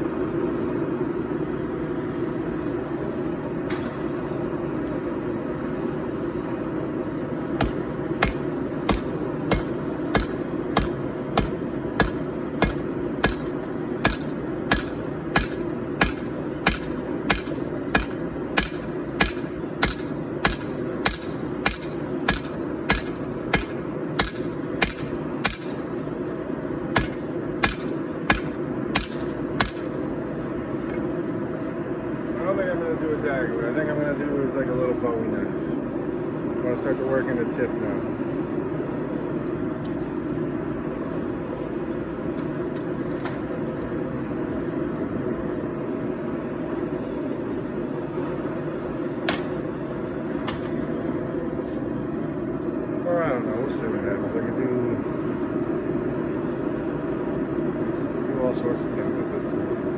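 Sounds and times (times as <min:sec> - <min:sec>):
gas forge roaring: 0:00.0 - 0:59.9
hammer ringing on anvil: 0:07.6 - 0:13.5, 0:14.1 - 0:25.8, 0:27.0 - 0:29.9.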